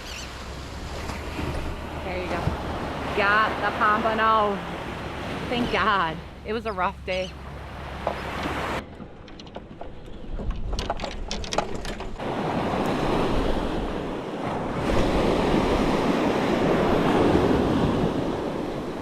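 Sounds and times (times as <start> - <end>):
ocean surf washing: 0.0 - 8.8, 12.2 - 19.0
wind buffeting microphone: 7.9 - 19.0.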